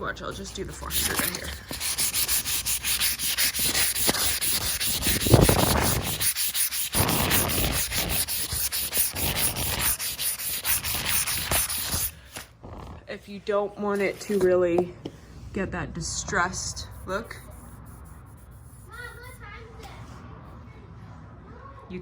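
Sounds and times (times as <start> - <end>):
sandpaper scratching on wood: 0.0 - 12.4.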